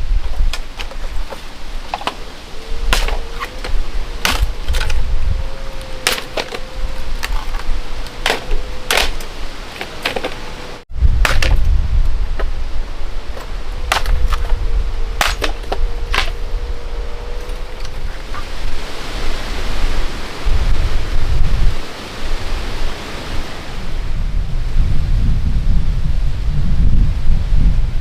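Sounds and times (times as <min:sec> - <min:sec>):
sharp irregular knocks: 0:11.2 - 0:11.7, 0:13.4 - 0:14.5, 0:15.2 - 0:16.4.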